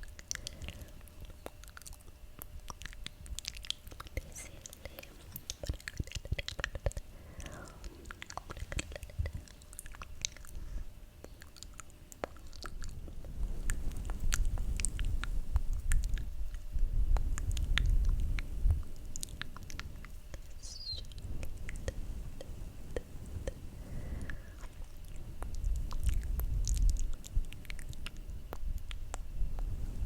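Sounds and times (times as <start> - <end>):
wet mouth clicks and smacks: 0.0 - 10.6, 11.2 - 29.8.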